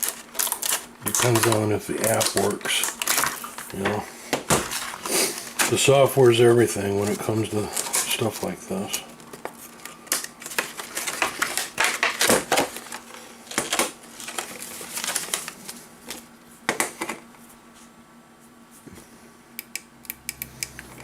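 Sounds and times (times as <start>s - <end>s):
packaging rustling: 0.0s - 17.2s.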